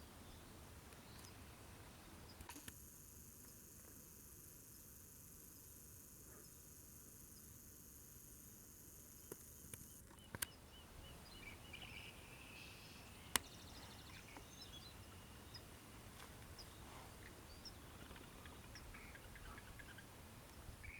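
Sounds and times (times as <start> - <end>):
small bird chirps: 9.2 - 15.7, 16.5 - 20.9
sharp clicks: 9.3 - 10.6.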